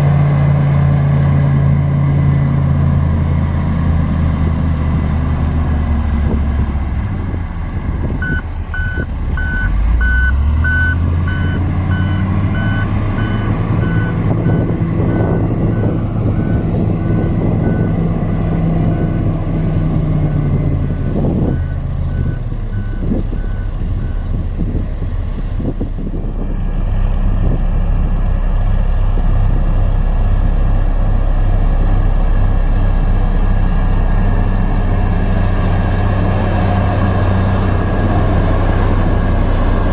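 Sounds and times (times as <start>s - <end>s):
diesel engine running: 0.0s - 39.9s
backup alarm beeping: 8.2s - 16.5s.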